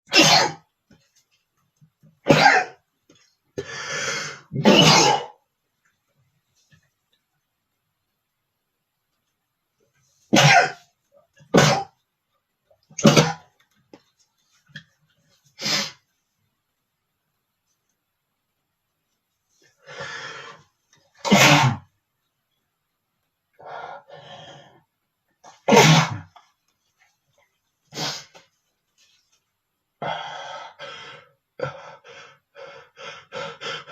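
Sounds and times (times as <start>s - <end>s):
man sneezing: 0.1s - 0.6s, 4.5s - 5.4s, 10.3s - 10.8s, 21.2s - 21.9s, 25.7s - 26.3s
noisy breath: 19.6s - 20.8s, 30.0s - 33.9s.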